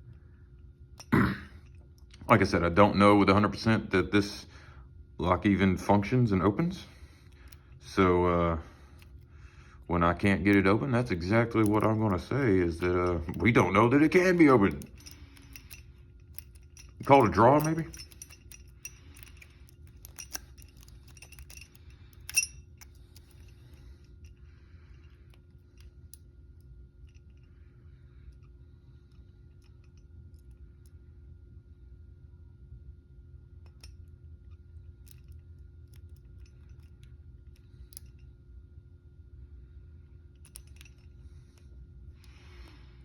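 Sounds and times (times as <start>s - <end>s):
lock picks clicking and scraping: 1.0s - 2.6s, 6.0s - 8.1s, 8.8s - 9.3s, 10.2s - 27.6s, 28.2s - 31.0s, 33.6s - 38.3s, 40.3s - 43.0s.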